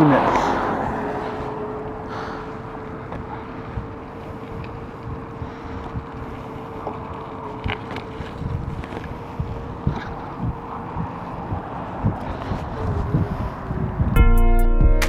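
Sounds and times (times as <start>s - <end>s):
wind buffeting microphone: 0.0s - 14.2s
low road rumble: 0.0s - 15.0s
faint clicks: 1.8s - 13.0s.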